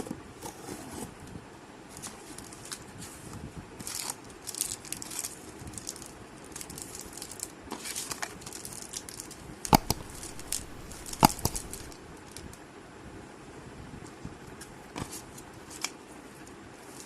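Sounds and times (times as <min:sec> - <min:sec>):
packaging rustling and crinkling: 0:03.8 - 0:12.4
sharp loud clicks: 0:09.7 - 0:12.0.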